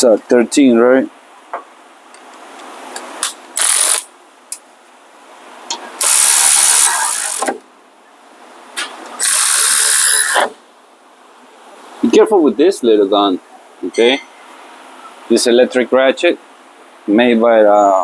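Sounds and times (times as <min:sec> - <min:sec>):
electric ratchet running: 0:03.6 - 0:04.1, 0:06.0 - 0:07.6, 0:09.2 - 0:10.5.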